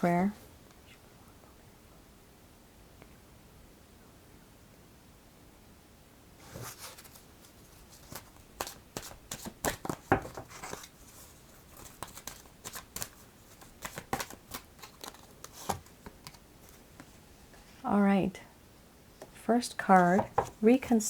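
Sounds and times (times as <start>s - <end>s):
cards being shuffled: 6.5s - 17.2s.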